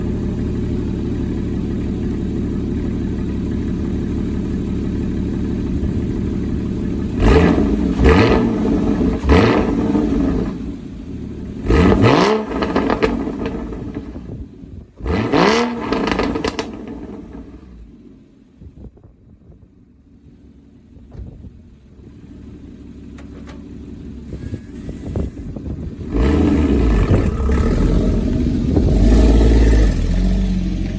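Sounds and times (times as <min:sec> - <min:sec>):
car engine idling and revving: 0:00.0 - 0:30.9.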